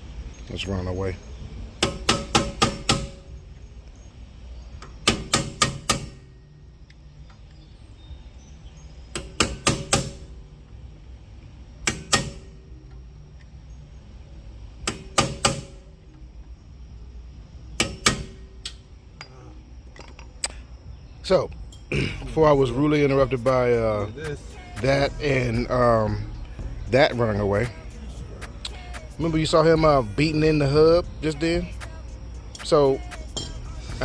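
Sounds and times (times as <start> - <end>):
hammer striking metal hub: 1.8 - 3.4, 4.8 - 6.4, 9.1 - 10.4, 11.8 - 13.0, 14.8 - 16.2, 17.7 - 20.4, 33.3 - 33.8.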